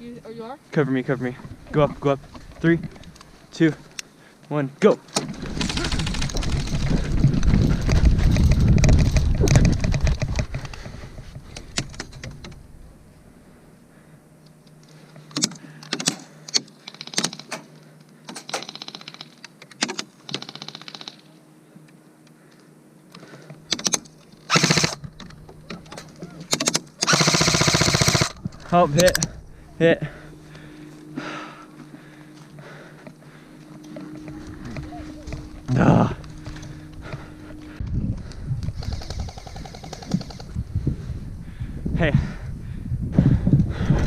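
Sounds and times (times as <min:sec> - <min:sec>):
airsoft rifles firing bursts: 0:05.3 - 0:07.0, 0:16.8 - 0:17.6, 0:18.3 - 0:21.3, 0:23.7 - 0:25.0, 0:26.5 - 0:28.4, 0:38.8 - 0:40.5.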